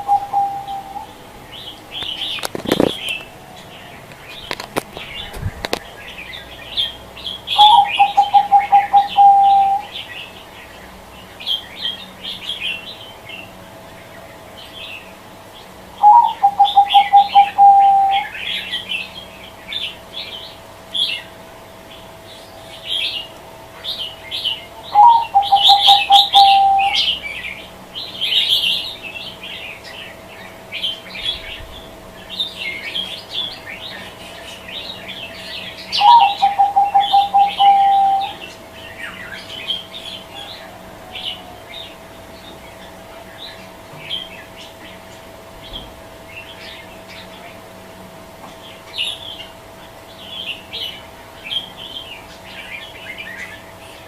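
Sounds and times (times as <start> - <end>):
dove cooing: 0.0 - 10.1, 16.0 - 19.0, 22.8 - 27.7, 35.1 - 42.1
birds twittering: 0.0 - 54.0.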